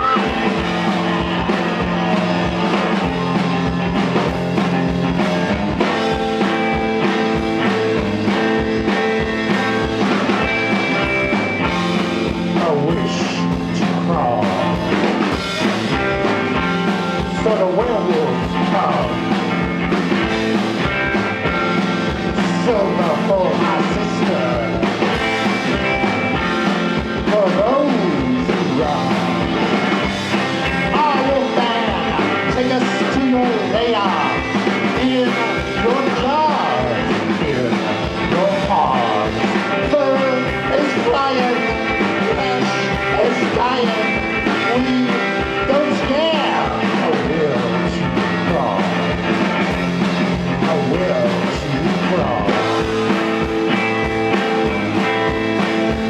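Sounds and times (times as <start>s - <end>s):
bass guitar: 0.0s - 56.0s
drums: 0.0s - 56.0s
electric guitar lead line bending: 0.0s - 56.0s.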